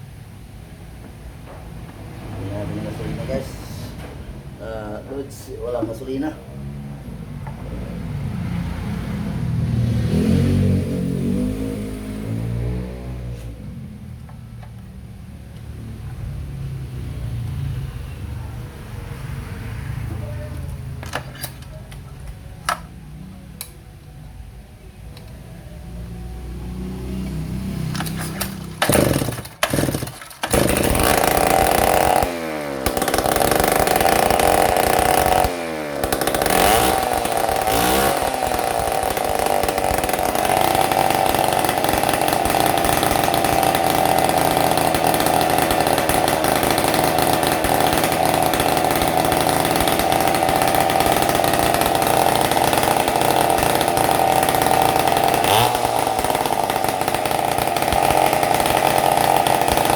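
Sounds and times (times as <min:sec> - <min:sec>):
chainsaw engine revving: 0:09.8 - 0:13.6, 0:26.7 - 0:59.9.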